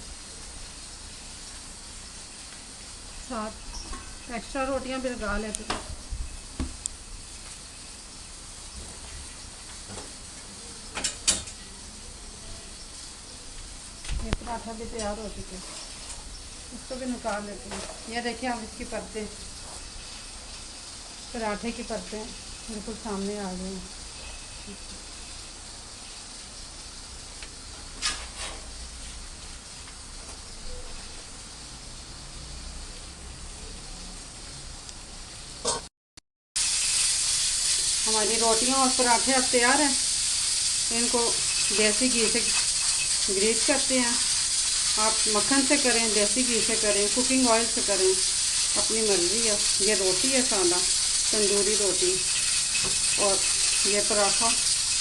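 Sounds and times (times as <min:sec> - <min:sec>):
gas burner hissing: 0:00.0 - 0:30.3, 0:36.6 - 0:55.0
faint knock: 0:06.6 - 0:06.8.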